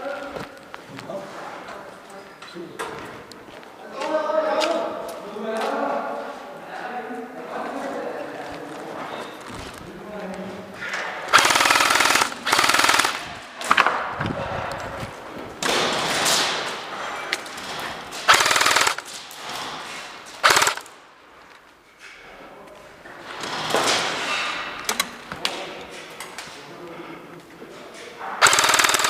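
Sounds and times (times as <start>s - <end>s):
airsoft gun bursts: 11.3s - 13.5s, 18.2s - 19.2s, 20.4s - 20.9s, 28.4s - 29.0s.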